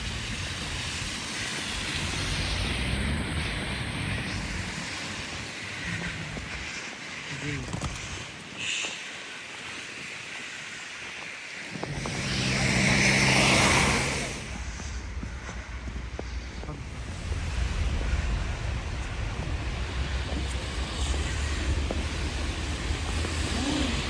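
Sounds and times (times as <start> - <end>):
steady low rumble: 0.0 - 8.2, 11.7 - 24.0
car passing close by: 11.7 - 15.2.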